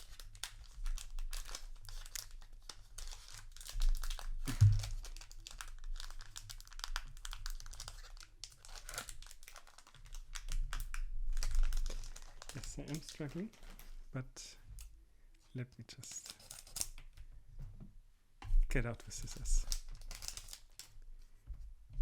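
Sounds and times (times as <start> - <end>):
wrapper crinkling: 0.0 - 14.1, 16.0 - 17.0, 19.0 - 21.0
dull handling thump: 4.5 - 5.0.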